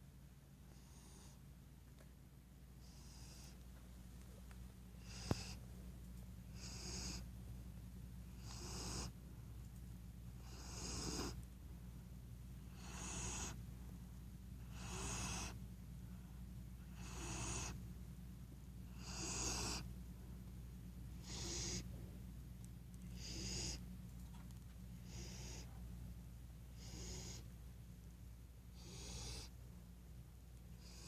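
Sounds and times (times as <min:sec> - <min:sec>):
puppy snoring: 0:00.6 - 0:01.5, 0:02.8 - 0:03.6, 0:05.0 - 0:05.7, 0:06.4 - 0:07.3, 0:08.3 - 0:09.2, 0:10.3 - 0:11.4, 0:12.6 - 0:13.6, 0:14.6 - 0:15.6, 0:16.8 - 0:17.8, 0:18.8 - 0:19.9, 0:21.1 - 0:22.1, 0:23.0 - 0:23.9, 0:24.9 - 0:25.8, 0:26.7 - 0:27.5, 0:28.6 - 0:29.6, 0:30.7 - 0:31.0.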